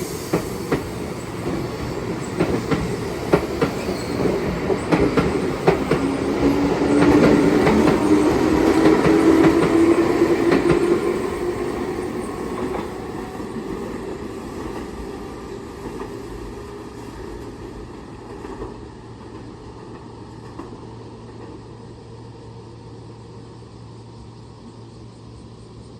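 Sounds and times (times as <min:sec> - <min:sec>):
train wheels clacking: 0:00.0 - 0:15.0.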